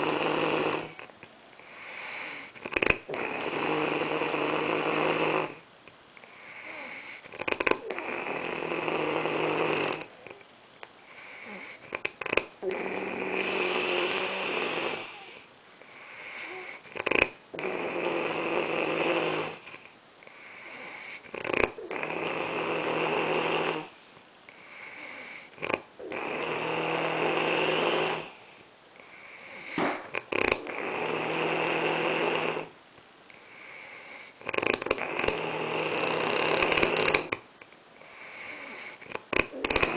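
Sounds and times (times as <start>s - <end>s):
person snoring loudly: 0.0s - 1.0s, 1.8s - 5.6s, 6.4s - 10.4s, 11.1s - 15.4s, 16.0s - 19.7s, 20.4s - 23.9s, 24.7s - 28.4s, 29.2s - 32.7s, 33.6s - 37.4s, 38.2s - 39.9s
soft breath: 6.2s - 7.4s, 11.0s - 12.0s, 15.0s - 16.9s, 19.5s - 21.3s, 23.8s - 25.6s, 38.0s - 39.1s
short sharp snort: 29.4s - 31.1s.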